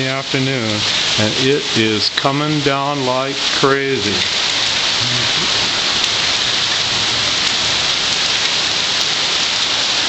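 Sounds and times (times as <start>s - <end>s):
heavy rain and hail falling: 0.0s - 10.0s.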